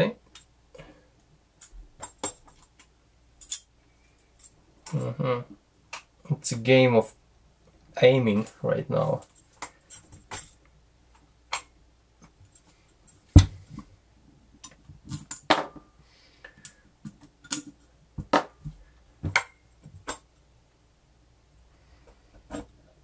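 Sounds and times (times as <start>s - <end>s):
small metal parts clicking: 3.4s - 5.1s, 9.2s - 10.6s.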